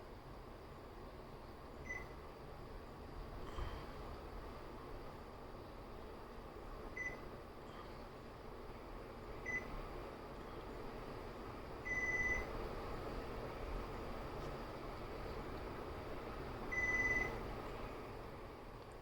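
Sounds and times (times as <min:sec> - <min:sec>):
ceiling fan receiver beeping: 0:01.7 - 0:02.4, 0:06.9 - 0:07.4, 0:09.4 - 0:10.0, 0:11.7 - 0:12.9, 0:16.1 - 0:17.7.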